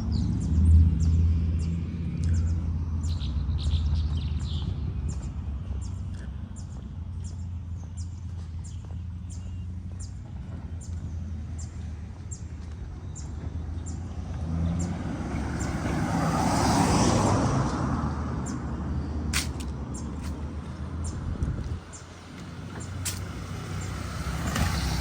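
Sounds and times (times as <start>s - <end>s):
footsteps ticking: 3.9s - 14.5s
car passing: 10.4s - 25.0s
sharp click: 19.4s - 19.8s.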